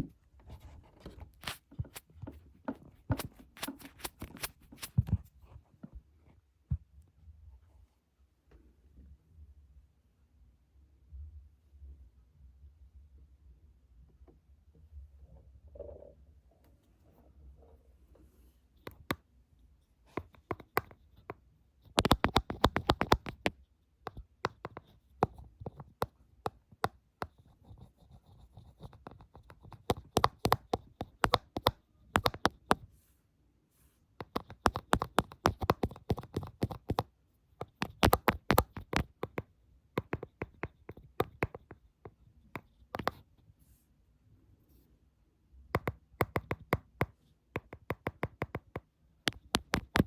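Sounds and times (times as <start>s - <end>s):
fingernails tapping and scratching: 1.1s - 5.1s, 20.2s - 23.5s, 28.5s - 32.8s, 34.2s - 43.2s, 45.8s - 50.0s.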